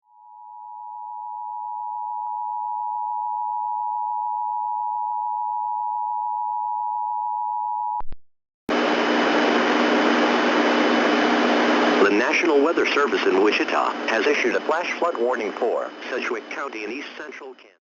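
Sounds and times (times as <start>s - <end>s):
electronic sine tone: 0.1s - 8.1s
static hiss with low hum: 8.7s - 17.7s.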